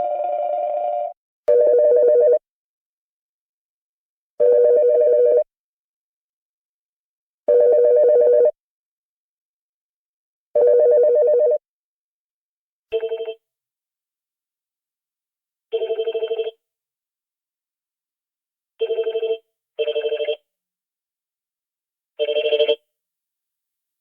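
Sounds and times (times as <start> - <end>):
telephone ringing: 0.0 - 2.4, 10.6 - 11.6, 12.9 - 13.4, 15.7 - 16.6, 18.8 - 20.4, 22.2 - 22.8.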